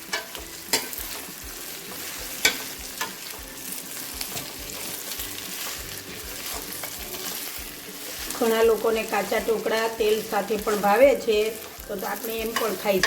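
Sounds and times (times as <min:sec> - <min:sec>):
spoon clicking against pan: 0:00.0 - 0:01.3, 0:02.4 - 0:03.2
oil sizzling in a pan: 0:00.0 - 0:13.0.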